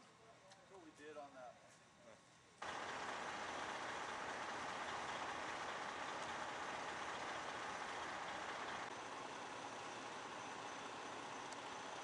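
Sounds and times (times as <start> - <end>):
heavy vehicle engine idling: 2.6 - 12.0.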